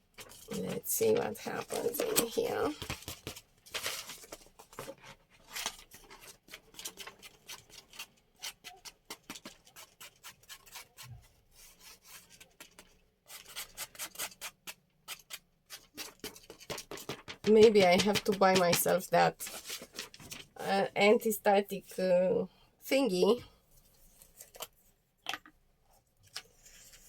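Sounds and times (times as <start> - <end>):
paper rubbing and scraping: 15.1 - 20.5.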